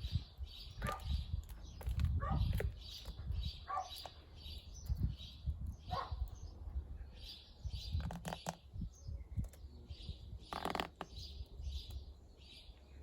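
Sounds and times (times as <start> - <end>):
small birds chirping: 0.0 - 13.0
dog bark: 3.7 - 4.0, 5.9 - 6.2.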